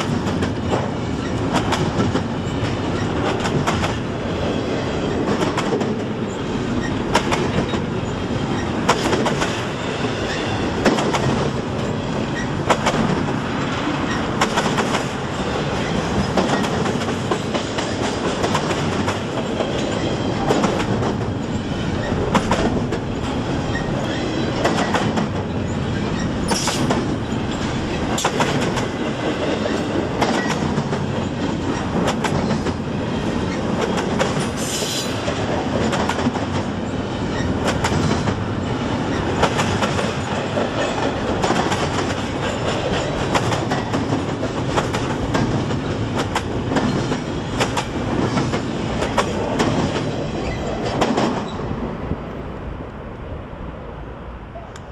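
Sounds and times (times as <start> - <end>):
freight train cars rumbling: 0.0 - 54.9
wheels clicking over rail joints: 14.0 - 51.6.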